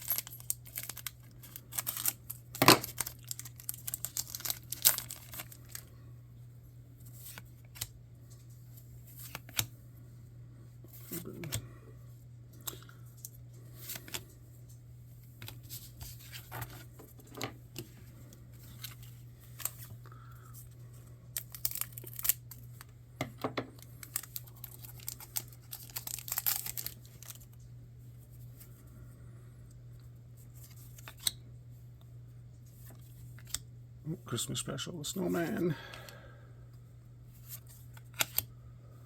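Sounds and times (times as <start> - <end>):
card packs tearing and rustling: 0.0 - 5.8, 21.4 - 22.7, 23.8 - 27.5
steady low hum: 0.0 - 39.0.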